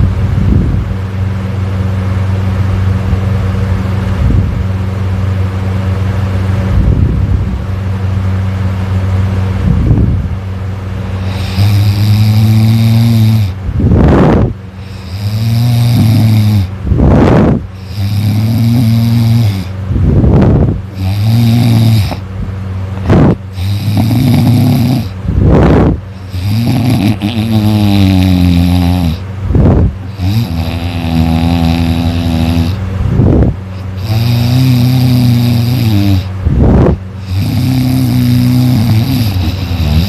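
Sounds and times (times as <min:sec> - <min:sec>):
low hum: 0:00.0 - 0:40.0
person snoring loudly: 0:11.2 - 0:22.2, 0:23.0 - 0:40.0.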